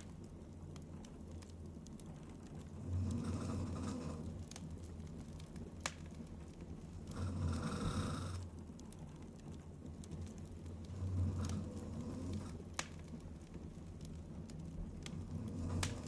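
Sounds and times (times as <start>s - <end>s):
woman snoring: 7.1s - 8.4s.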